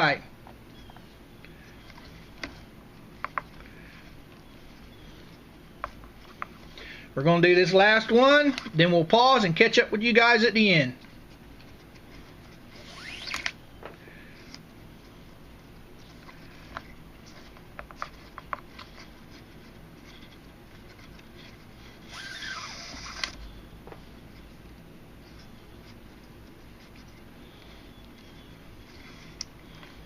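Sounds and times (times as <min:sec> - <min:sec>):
cord rasping drawn tight: 0:12.8 - 0:13.6, 0:22.0 - 0:23.4.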